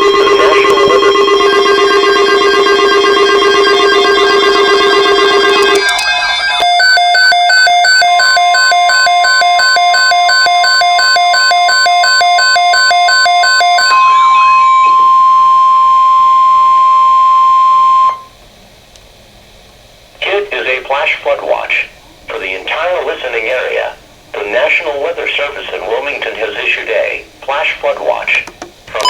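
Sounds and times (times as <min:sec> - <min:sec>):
rapid multi-tone beeping: 0:00.0 - 0:18.3
steady alarm tone: 0:00.0 - 0:18.4.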